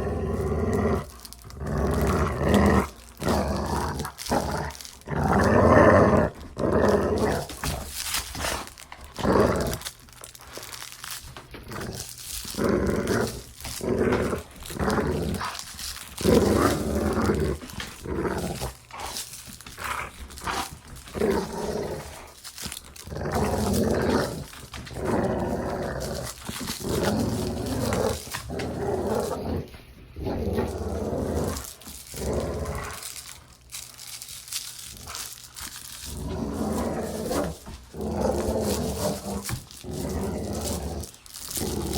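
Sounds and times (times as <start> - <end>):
dog play-growling: 0.0 - 41.9.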